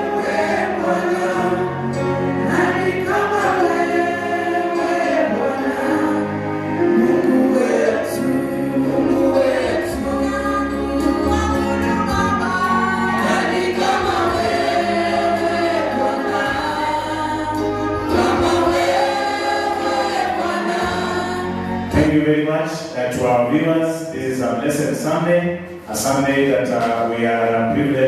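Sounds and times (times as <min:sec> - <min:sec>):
choir singing gospel song: 0:00.0 - 0:28.0
instrumental backing music: 0:00.0 - 0:28.0.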